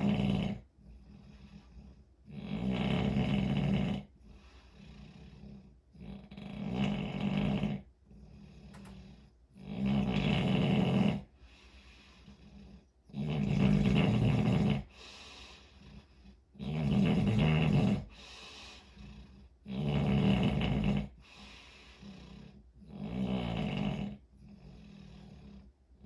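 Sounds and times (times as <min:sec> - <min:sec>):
deep snores: 0:00.0 - 0:26.0
soft breaths: 0:00.6 - 0:02.3, 0:04.0 - 0:06.0, 0:07.8 - 0:09.6, 0:11.2 - 0:13.1, 0:14.4 - 0:16.6, 0:18.0 - 0:19.7, 0:21.1 - 0:22.9.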